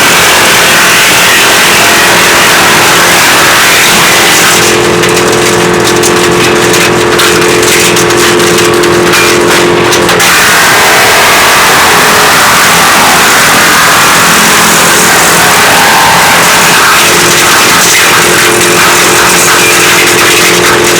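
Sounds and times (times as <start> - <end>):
steady hum: 0.0 - 20.9
woodchipper running: 0.0 - 20.9.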